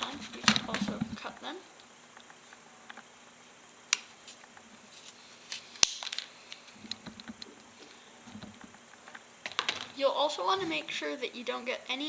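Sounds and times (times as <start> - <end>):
plastic snapping: 5.8 - 7.5, 8.3 - 10.0.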